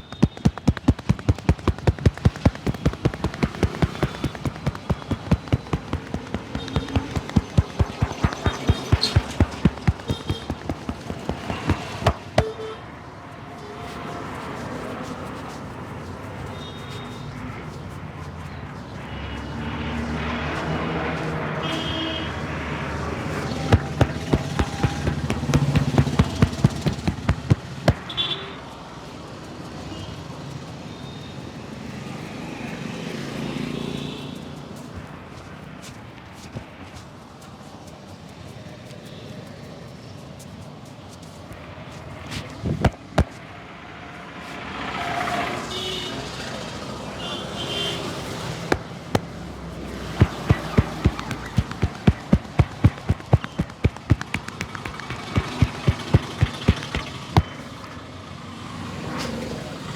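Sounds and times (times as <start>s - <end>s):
rhythmic hand strikes: 0.0s - 12.5s, 23.7s - 28.1s, 50.2s - 57.6s
street traffic noise: 0.0s - 59.9s.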